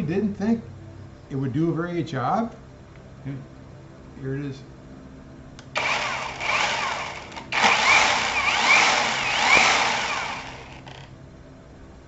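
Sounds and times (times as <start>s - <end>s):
cordless chainsaw whining: 5.8s - 11.1s.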